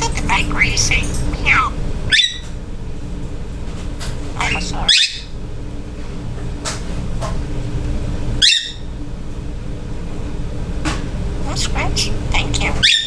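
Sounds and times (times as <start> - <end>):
budgerigar chirping: 0.0 - 2.5, 4.4 - 5.4, 8.4 - 8.9, 11.4 - 13.0
low background hum: 0.0 - 13.0.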